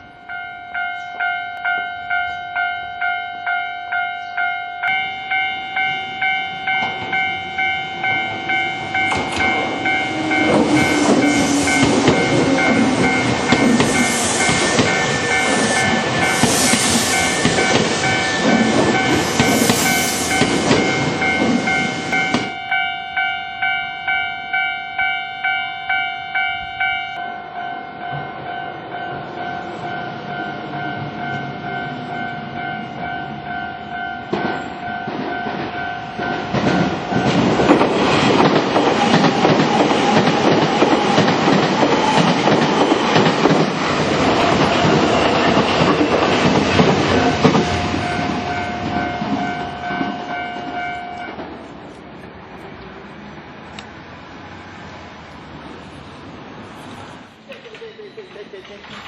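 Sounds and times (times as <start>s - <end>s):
level crossing bells ringing: 0.0s - 37.5s, 47.1s - 51.4s
train wheels clattering over rails: 6.7s - 22.6s, 34.2s - 53.0s.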